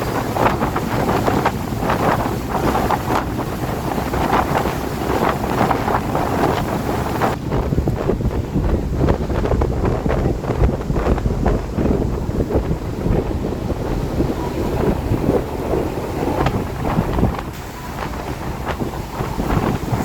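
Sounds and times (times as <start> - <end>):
rain: 0.0 - 20.0
strong wind gusting: 0.0 - 20.0
wind buffeting microphone: 0.0 - 20.0.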